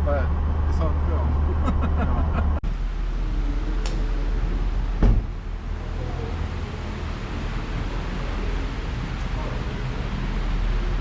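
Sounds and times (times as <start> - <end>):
vehicle engine rumbling: 0.0 - 11.0
heavy thump: 5.0 - 5.4.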